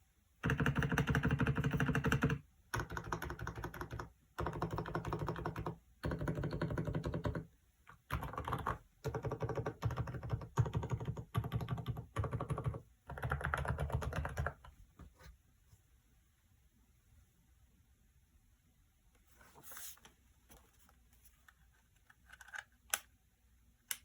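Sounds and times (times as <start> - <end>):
mechanical keyboard typing: 0.4 - 14.7.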